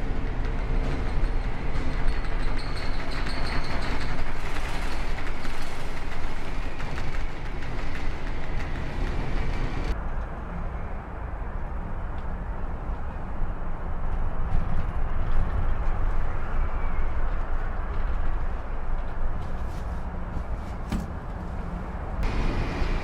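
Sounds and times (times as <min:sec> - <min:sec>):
wind: 0:00.0 - 0:23.0.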